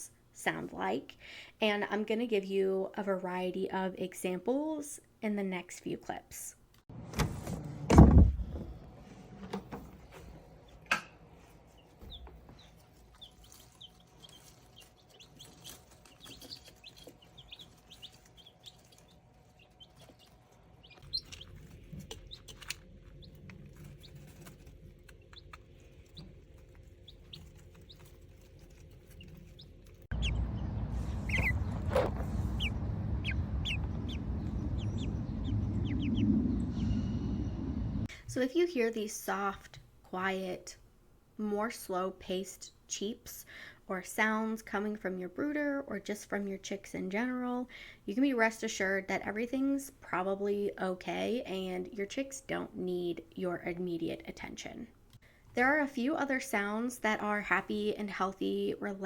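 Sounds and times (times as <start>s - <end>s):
loud low thump: 7.9s - 8.8s
chicks cheeping: 11.7s - 37.5s.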